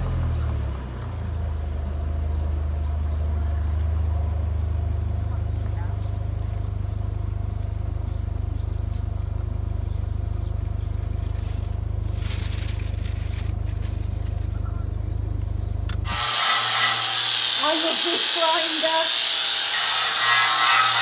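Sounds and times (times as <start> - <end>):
engine idling: 0.0 - 16.2.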